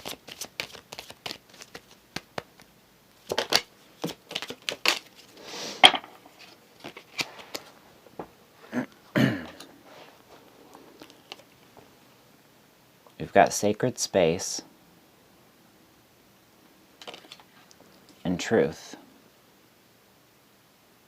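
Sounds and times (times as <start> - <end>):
cards being shuffled: 0.0 - 7.8, 10.7 - 11.7, 17.0 - 17.7.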